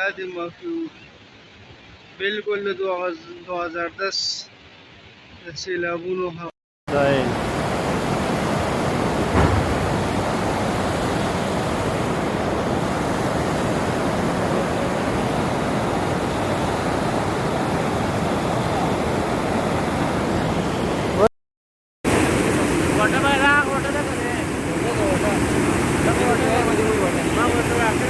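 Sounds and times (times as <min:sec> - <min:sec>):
river rushing in flood: 0:06.9 - 0:21.3, 0:22.1 - 0:28.0.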